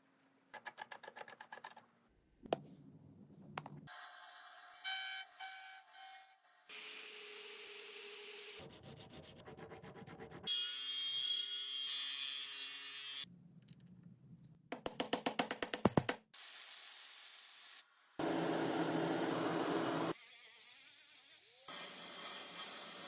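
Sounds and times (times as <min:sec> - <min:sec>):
hiss: 0:21.6 - 0:23.0.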